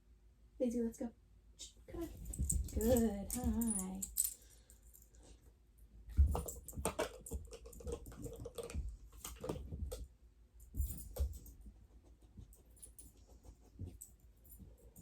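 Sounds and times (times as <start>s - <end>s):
dog claws clicking and tapping: 2.2s - 4.4s, 6.2s - 10.1s.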